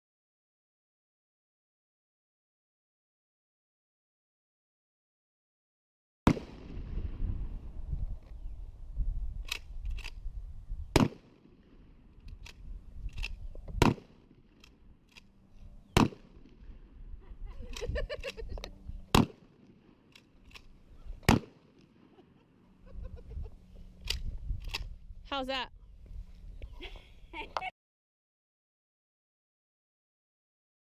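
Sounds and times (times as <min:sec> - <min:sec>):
shotgun shots: 0:06.3 - 0:07.2, 0:10.9 - 0:11.9, 0:13.8 - 0:14.6, 0:15.9 - 0:16.6, 0:19.1 - 0:19.7, 0:21.2 - 0:22.1
gun handling clicks and clacks: 0:09.4 - 0:10.2, 0:12.2 - 0:15.4, 0:17.7 - 0:18.8, 0:19.6 - 0:22.0, 0:24.0 - 0:24.9.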